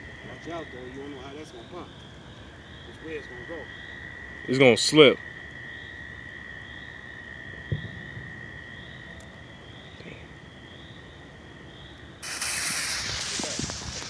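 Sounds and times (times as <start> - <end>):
insects trilling: 0.0 - 14.0
firework spraying sparks hissing: 12.2 - 14.0.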